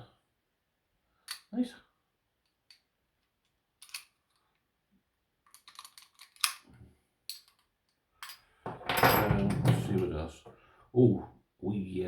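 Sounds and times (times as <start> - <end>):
padlock and keys clicking: 3.8 - 4.4, 5.5 - 6.7.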